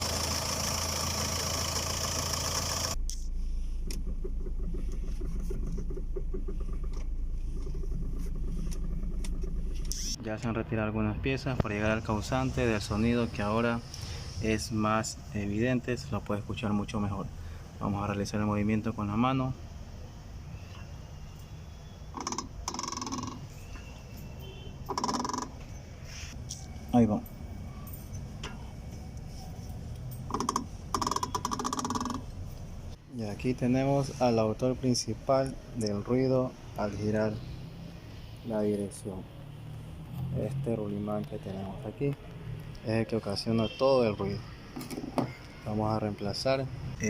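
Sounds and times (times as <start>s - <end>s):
car engine idling: 0.0s - 10.1s
car steering bearing creaking: 3.8s - 10.2s, 22.1s - 23.5s, 24.8s - 25.7s, 30.1s - 32.4s.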